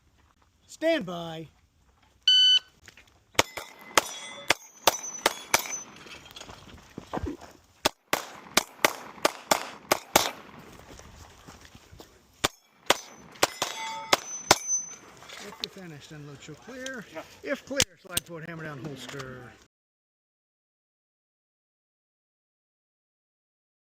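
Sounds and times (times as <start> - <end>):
shot timer beep: 2.3 - 2.7
pistol shots: 3.4 - 6.0, 7.8 - 10.7, 12.4 - 15.1
steel targets ringing: 3.4 - 6.2, 12.4 - 15.6.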